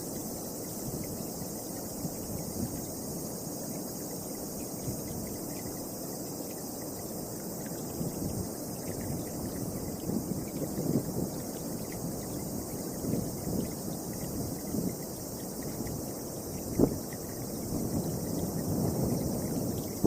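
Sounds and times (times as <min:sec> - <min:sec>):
high-pitched insect chorus: 0:00.0 - 0:20.0
gusty wind buffeting microphone: 0:07.6 - 0:20.0.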